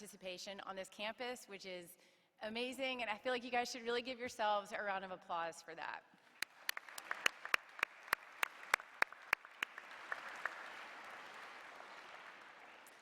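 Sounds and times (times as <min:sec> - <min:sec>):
loud claps near microphone: 0:06.2 - 0:13.0
audience applauding: 0:06.4 - 0:13.0.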